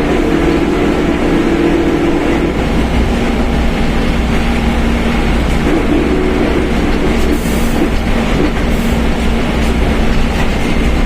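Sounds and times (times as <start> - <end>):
bus engine and road noise: 0.0 - 11.0.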